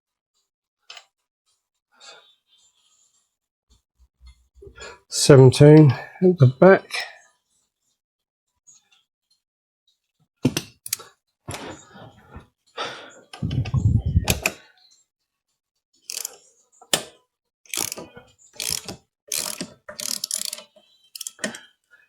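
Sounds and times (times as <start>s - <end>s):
socket ratchet clicking: 16.1s - 16.3s, 17.7s - 18.0s, 18.6s - 20.6s, 21.2s - 21.5s.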